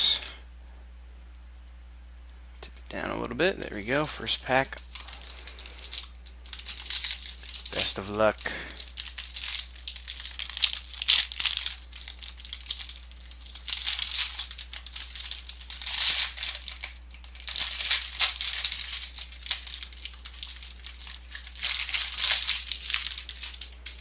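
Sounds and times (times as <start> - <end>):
plastic wrapper tearing and crinkling: 3.8 - 24.0.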